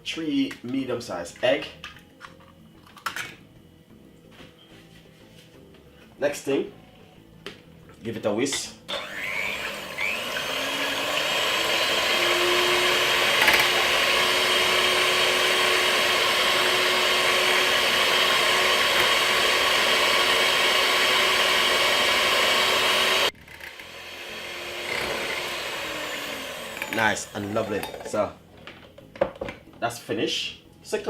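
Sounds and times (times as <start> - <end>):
electric hand mixer whirring: 8.9 - 28.0.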